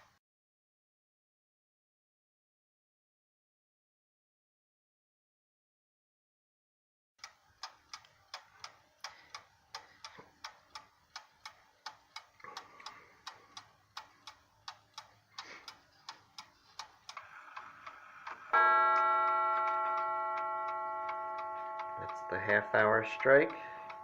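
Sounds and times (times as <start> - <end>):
clock ticking: 7.2 - 24.0
clock strike train whirring: 17.2 - 24.0
clock gong strike: 18.5 - 24.0.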